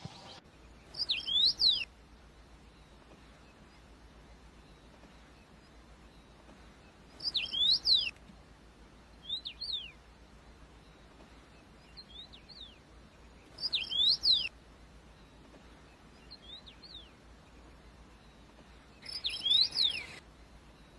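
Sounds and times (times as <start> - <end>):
songbird singing whistled notes: 0.0 - 1.9, 2.6 - 8.2, 9.1 - 10.0, 10.8 - 14.5, 15.1 - 20.9.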